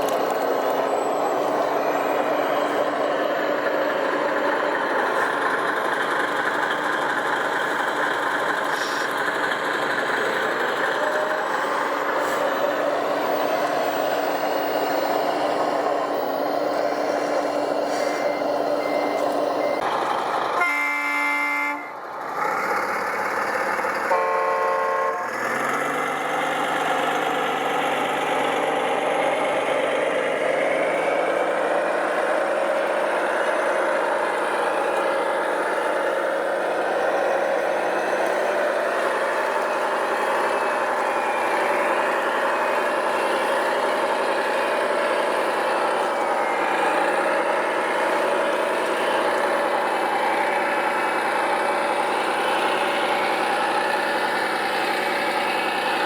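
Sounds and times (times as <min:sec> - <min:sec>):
truck engine running: 0:00.0 - 0:56.0
truck horn blast: 0:20.6 - 0:22.0, 0:24.1 - 0:25.4.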